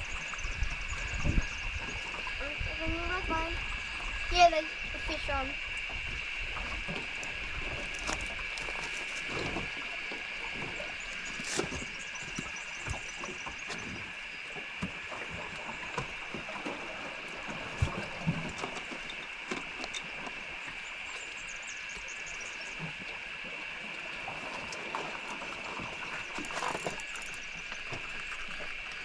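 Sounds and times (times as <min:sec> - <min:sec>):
high-pitched drone: 0:18.6 - 0:28.6.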